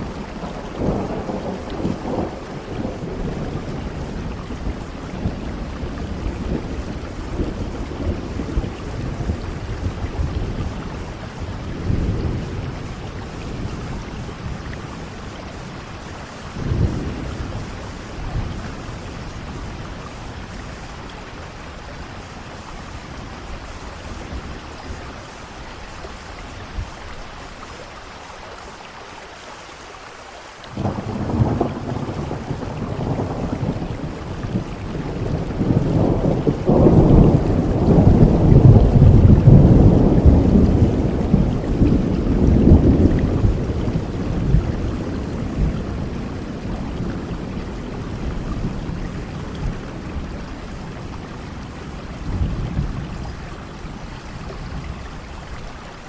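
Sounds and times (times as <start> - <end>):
rolling thunder: 0.0 - 27.1, 30.7 - 55.8
heavy rain: 0.0 - 56.0
thunderclap: 30.8 - 54.0.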